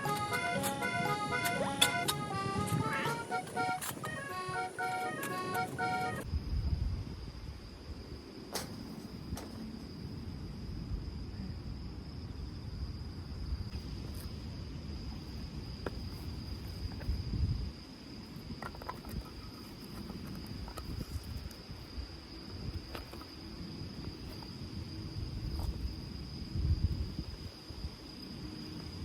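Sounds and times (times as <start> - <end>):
crickets trilling: 0.0 - 29.0
wind rumble on microphone: 6.2 - 8.4, 9.0 - 29.0.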